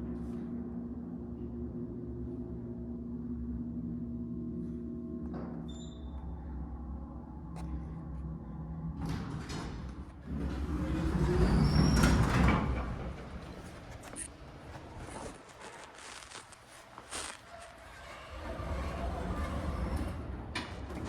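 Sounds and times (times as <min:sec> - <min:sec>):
mechanical hum: 0:00.0 - 0:21.0
elevator doors sliding: 0:09.0 - 0:15.4, 0:17.5 - 0:21.0.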